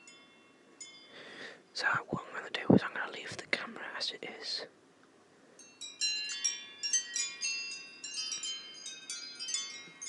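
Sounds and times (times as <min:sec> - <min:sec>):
wind chimes ringing: 0:00.0 - 0:01.7, 0:05.6 - 0:10.0.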